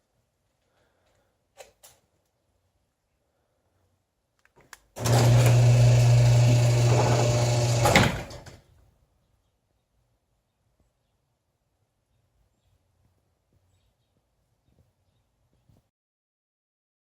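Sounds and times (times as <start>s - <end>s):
electric motor humming: 5.0s - 8.6s.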